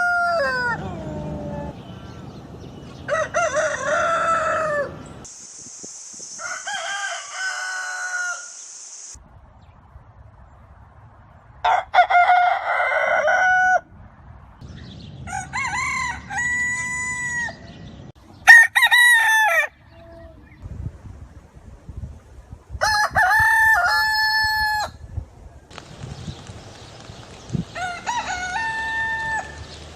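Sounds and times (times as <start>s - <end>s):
roosters crowing: 0.0s - 5.3s, 6.4s - 8.6s, 11.6s - 13.9s, 15.2s - 17.8s, 18.4s - 20.0s, 22.8s - 25.0s, 27.6s - 29.9s
steady high hiss: 5.2s - 9.2s.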